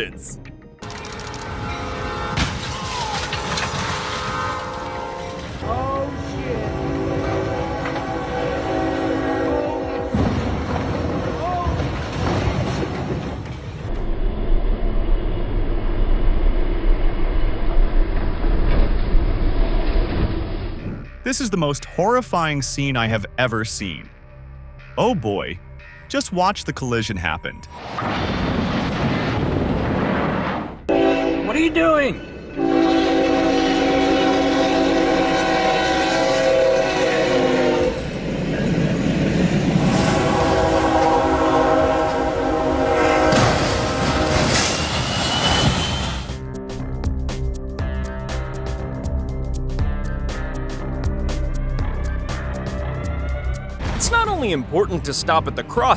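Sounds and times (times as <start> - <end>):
train rumbling on tracks: 0.8 - 21.2, 27.8 - 55.7
train air horn chord: 1.2 - 2.6, 3.3 - 10.5, 30.9 - 38.1, 39.8 - 44.8.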